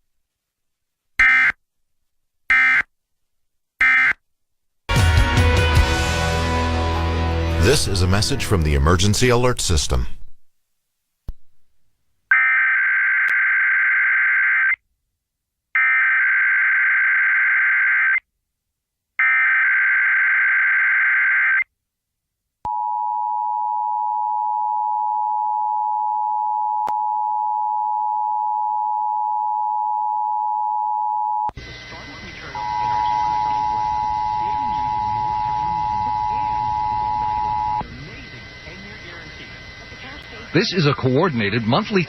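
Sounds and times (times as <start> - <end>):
steady dual-tone attention signal: 22.7 - 42.0
warbling digital data tones: 31.6 - 42.0.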